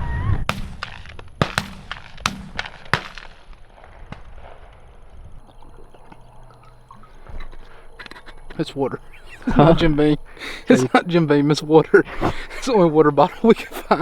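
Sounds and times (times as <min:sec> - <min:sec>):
distant shotgun shots: 0:00.2 - 0:05.5
shotgun shots: 0:00.3 - 0:05.4.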